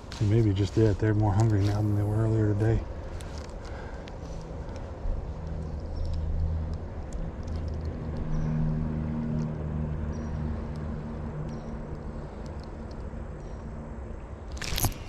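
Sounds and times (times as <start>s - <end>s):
low engine-like hum: 0.0s - 15.0s
faint clicks: 3.1s - 8.5s, 10.3s - 13.7s.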